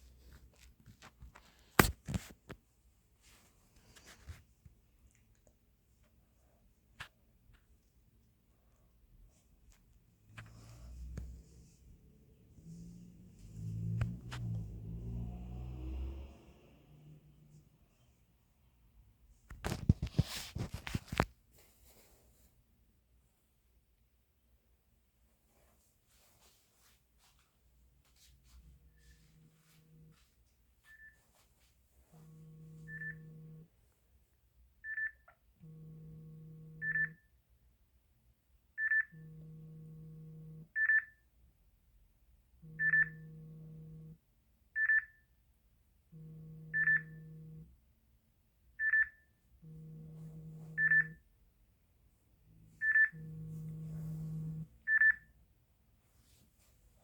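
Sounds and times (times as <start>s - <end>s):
lower phone buzz: 28.9s - 30.2s, 32.2s - 33.7s, 35.6s - 37.2s, 39.0s - 40.7s, 42.6s - 44.2s, 46.1s - 47.7s, 49.6s - 51.2s, 52.8s - 55.2s.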